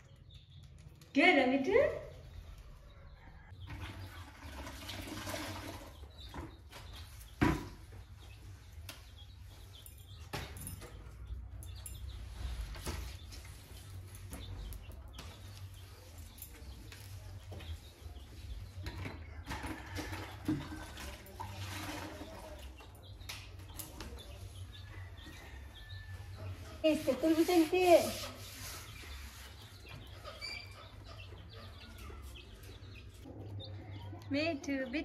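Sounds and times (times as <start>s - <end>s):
water splashing and trickling: 3.6s - 6.3s, 19.6s - 23.0s.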